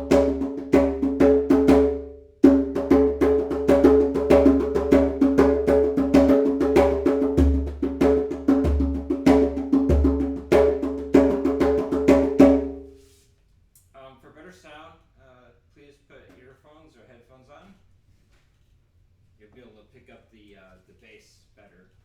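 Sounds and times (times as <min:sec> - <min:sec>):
hand drum fast rhythm: 0:00.0 - 0:12.8.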